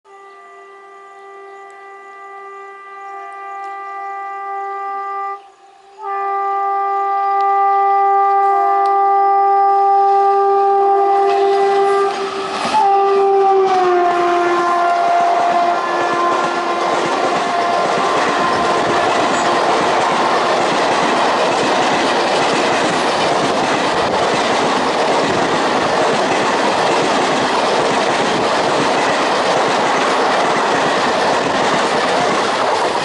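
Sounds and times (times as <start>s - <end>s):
train horn chord: 0.0s - 20.5s
passing train noise: 0.1s - 33.0s.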